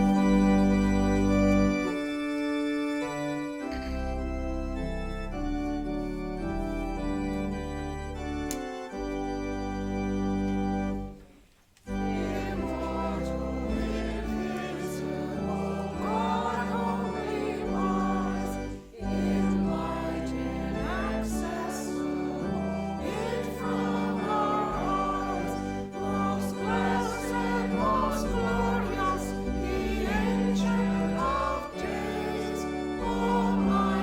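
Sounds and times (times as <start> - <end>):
choir singing a hymn: 0.0 - 2.4, 11.9 - 34.0
organ: 0.0 - 34.0.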